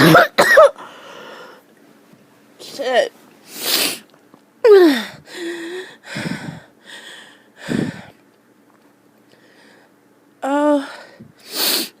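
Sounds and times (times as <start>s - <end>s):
person coughing harshly: 0.0s - 0.8s
gasping breaths: 4.7s - 8.2s.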